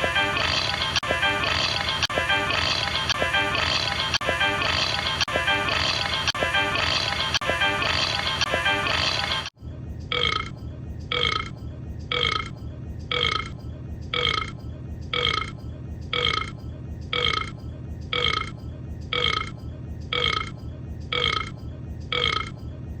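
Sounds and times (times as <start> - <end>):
steady low hum: 9.6 - 23.0
cartoon burp sound effect: 10.1 - 10.5.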